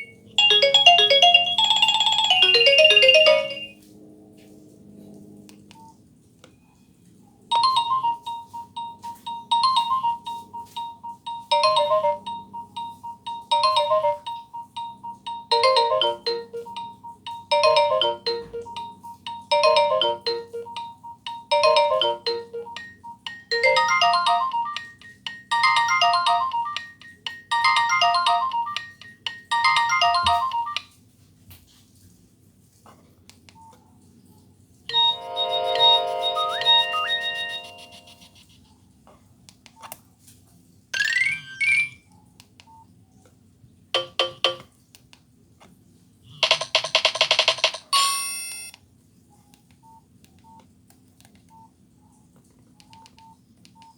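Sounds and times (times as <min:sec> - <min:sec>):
different phone tone: 0:00.0 - 0:03.8, 0:07.5 - 0:30.9, 0:34.9 - 0:38.3, 0:41.0 - 0:42.0, 0:46.4 - 0:48.8
phone ringtone melody: 0:00.0 - 0:03.8, 0:07.5 - 0:30.9, 0:34.9 - 0:38.4, 0:41.0 - 0:42.0, 0:44.0 - 0:44.6, 0:46.4 - 0:48.8.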